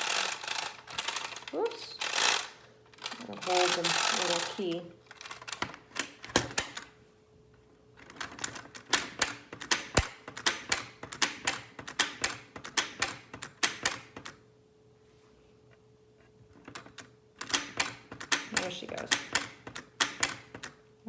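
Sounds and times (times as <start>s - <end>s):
wind-up toy clockwork clicking: 0.0s - 6.8s.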